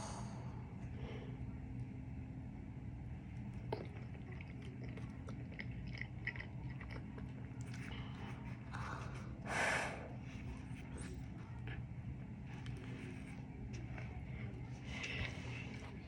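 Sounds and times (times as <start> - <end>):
steady low hum: 0.0 - 16.0
chewing with wet crunches: 3.4 - 9.3.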